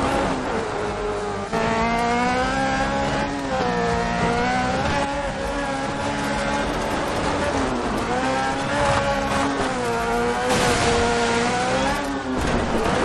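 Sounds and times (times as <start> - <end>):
buggy engine revving: 0.0 - 13.0.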